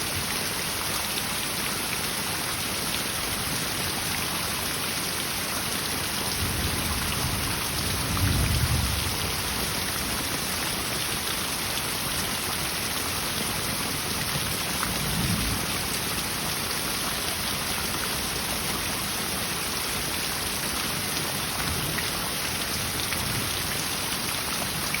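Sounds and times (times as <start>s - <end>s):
heavy rain: 0.0s - 25.0s
thunder rumbles: 6.4s - 9.6s.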